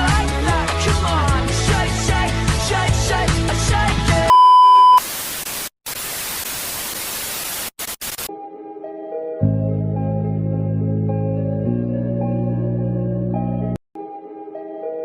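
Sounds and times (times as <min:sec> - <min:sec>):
music: 0:00.0 - 0:04.3, 0:08.3 - 0:15.0
steady single-pitch beep: 0:04.3 - 0:05.0
tv static hiss: 0:04.8 - 0:08.3.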